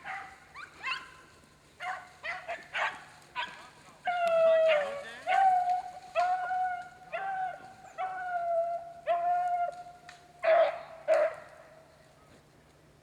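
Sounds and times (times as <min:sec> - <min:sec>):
dog barking: 0:00.0 - 0:01.0, 0:10.4 - 0:11.5.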